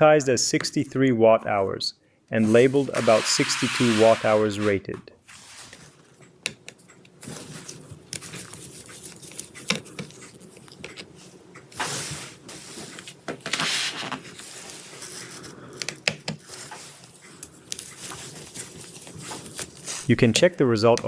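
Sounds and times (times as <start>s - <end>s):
scraping rustling noises: 2.4s - 6.2s, 7.2s - 15.6s, 16.4s - 20.4s.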